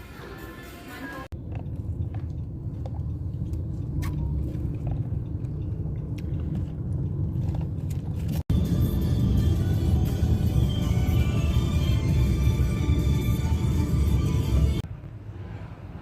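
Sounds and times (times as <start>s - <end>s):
steady low rumble: 1.2s - 16.0s.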